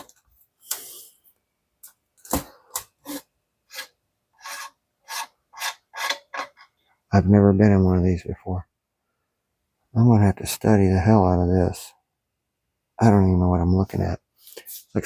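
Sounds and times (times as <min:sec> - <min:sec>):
metal-on-metal scraping: 0:03.0 - 0:06.8.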